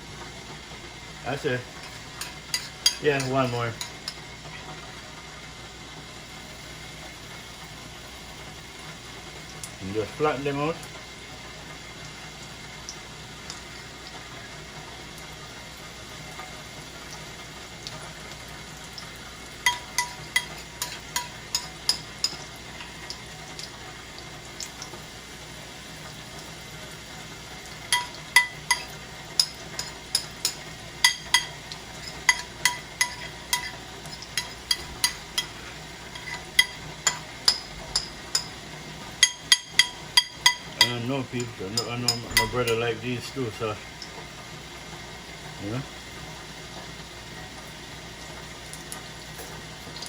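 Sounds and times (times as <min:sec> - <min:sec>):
food sizzling in hot oil: 0:00.0 - 0:50.0
metal utensil tapping pan: 0:01.8 - 0:04.2, 0:19.6 - 0:22.4, 0:27.9 - 0:38.5, 0:39.2 - 0:42.8.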